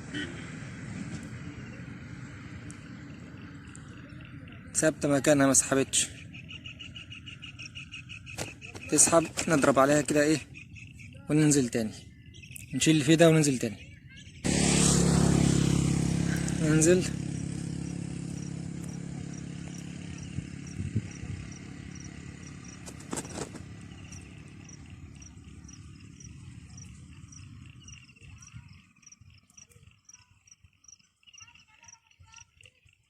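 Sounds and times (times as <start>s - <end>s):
passing vehicle engine: 0.0s - 10.7s, 14.3s - 29.4s
insect chirping: 17.3s - 33.0s.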